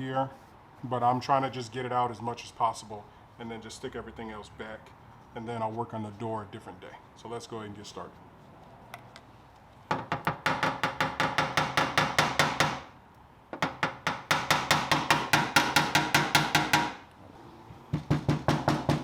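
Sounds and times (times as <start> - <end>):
hammer tapping on sheet metal: 9.9 - 17.1, 17.9 - 19.0.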